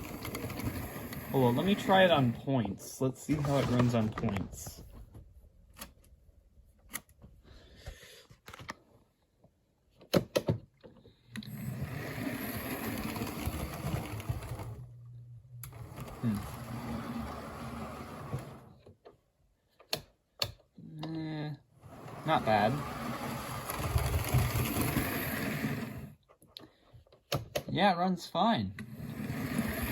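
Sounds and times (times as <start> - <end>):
model train motor whirring: 11.4 - 14.8, 22.1 - 26.1, 28.9 - 29.9.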